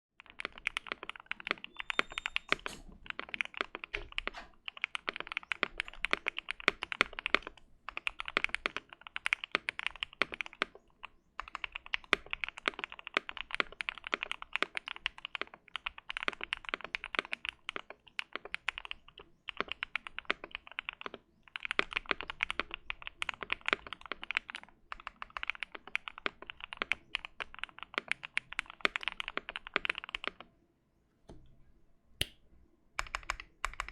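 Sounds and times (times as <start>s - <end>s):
mechanical keyboard typing: 0.2s - 30.5s, 33.0s - 33.9s.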